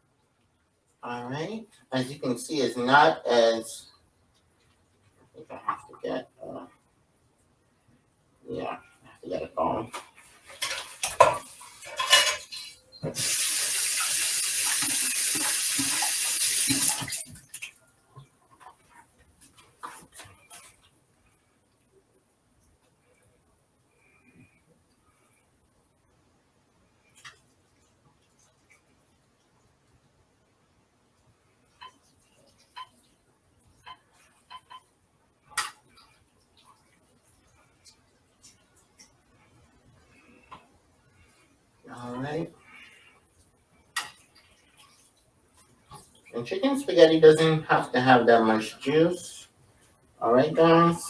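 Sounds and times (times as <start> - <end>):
dishes and utensils clinking: 10.5 - 13.3
kitchen faucet running: 13.1 - 17.3.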